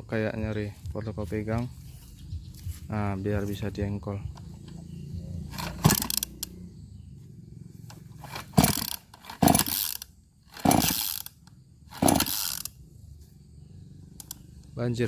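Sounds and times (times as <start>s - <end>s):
engine pull-starter yanked: 5.5s - 6.6s, 7.8s - 12.8s.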